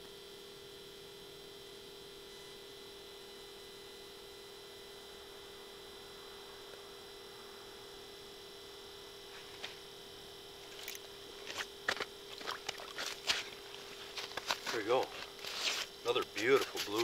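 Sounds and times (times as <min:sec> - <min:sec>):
two-tone electronic hum: 0:00.0 - 0:17.0
rustling handling noise: 0:10.6 - 0:17.0.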